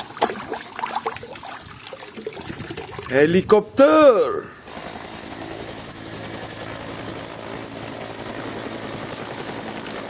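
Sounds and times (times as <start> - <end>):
helicopter rotor chop: 4.5 - 10.0.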